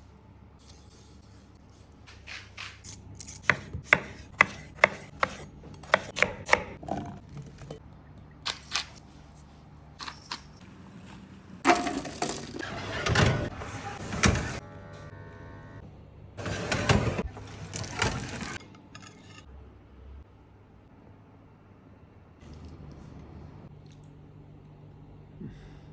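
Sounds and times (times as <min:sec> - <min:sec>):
knife chopping on wooden board: 0:03.4 - 0:06.8.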